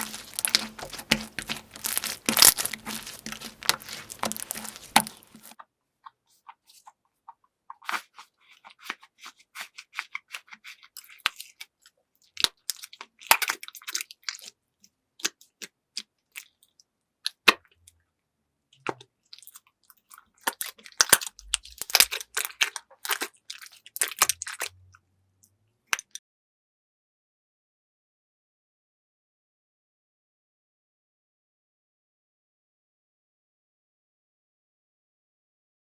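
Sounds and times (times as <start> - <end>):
slime crackling and crunching: 0.0 - 5.6, 7.7 - 14.5, 18.8 - 24.8.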